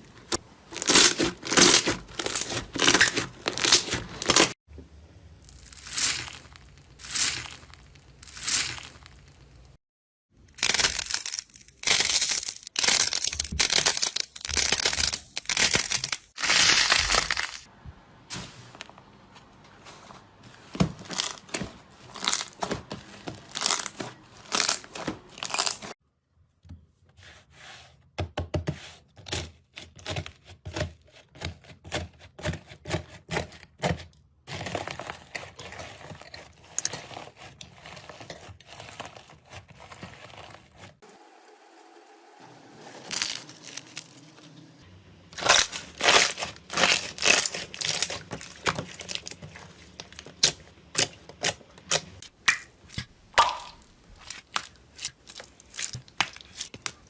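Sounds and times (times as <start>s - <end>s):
slime crackling and popping: 0.8s - 4.5s, 10.5s - 17.7s, 45.4s - 52.7s.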